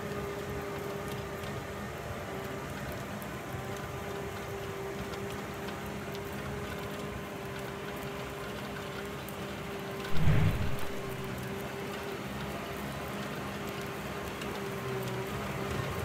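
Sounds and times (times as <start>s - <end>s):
loud low thump: 10.1s - 11.3s.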